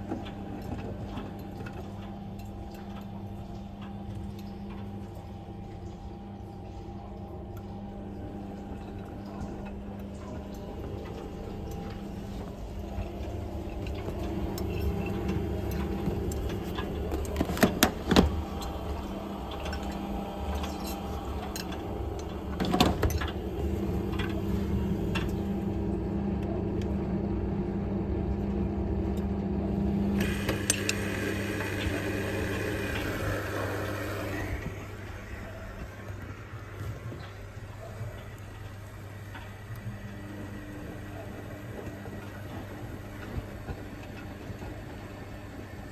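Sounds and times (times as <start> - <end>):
washing machine motor hum: 0.0 - 45.9
water rushing: 10.4 - 25.8, 29.9 - 43.6.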